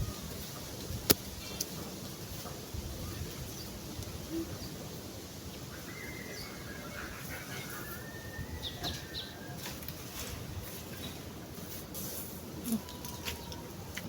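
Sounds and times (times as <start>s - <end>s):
outdoor background noise: 0.0s - 14.0s
bird calling high note: 5.6s - 9.8s.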